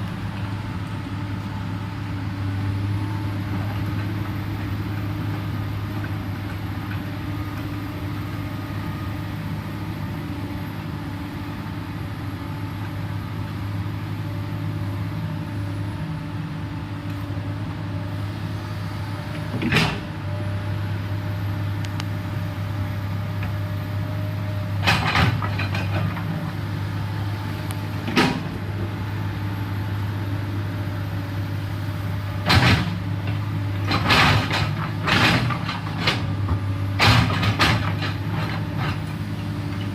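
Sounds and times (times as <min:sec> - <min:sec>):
excavator diesel engine running: 0:00.0 - 0:39.9
machine knocks and clanks: 0:24.8 - 0:26.3, 0:28.0 - 0:28.6, 0:32.4 - 0:39.9.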